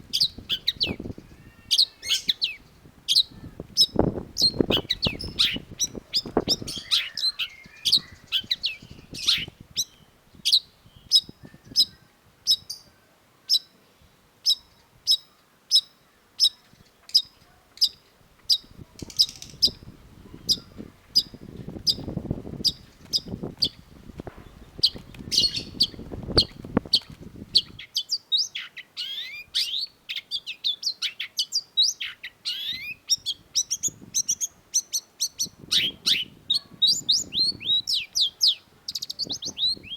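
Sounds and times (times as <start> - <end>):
bird singing: 0.1 - 12.9, 14.5 - 39.9.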